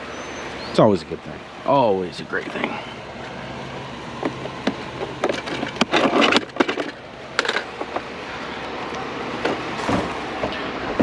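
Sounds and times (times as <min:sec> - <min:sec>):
scrap items clattering: 0:04.2 - 0:08.1.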